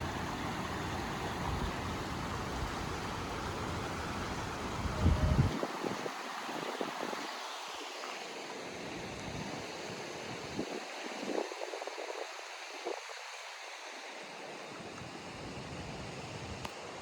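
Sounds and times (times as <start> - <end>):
waterfall rushing: 0.0 - 8.0
wind buffeting microphone: 1.3 - 7.2.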